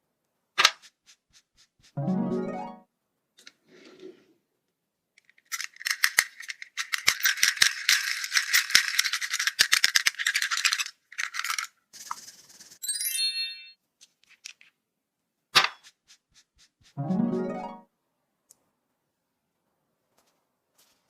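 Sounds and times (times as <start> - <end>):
small hard pieces rattling: 5.2 - 12.2.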